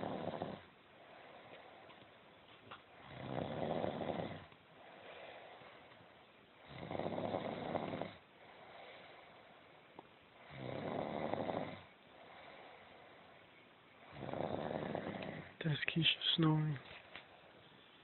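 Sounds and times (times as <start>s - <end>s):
loud rattly snores: 0.0s - 0.7s, 3.0s - 4.5s, 6.6s - 9.1s, 10.4s - 12.8s, 14.0s - 15.6s
soft breathing: 0.9s - 3.2s, 4.2s - 6.3s, 8.2s - 10.6s, 12.0s - 15.8s.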